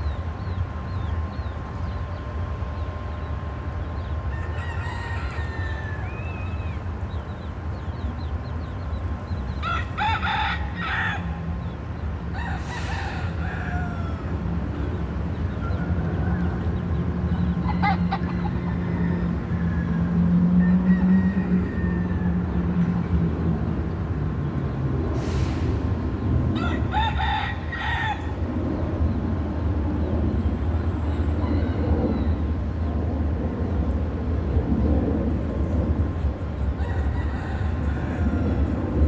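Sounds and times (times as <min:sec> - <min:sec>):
rooster crowing: 0:04.3 - 0:06.4, 0:09.6 - 0:11.4, 0:12.3 - 0:14.4, 0:17.6 - 0:22.7, 0:26.6 - 0:28.4, 0:31.3 - 0:32.4, 0:36.8 - 0:38.8.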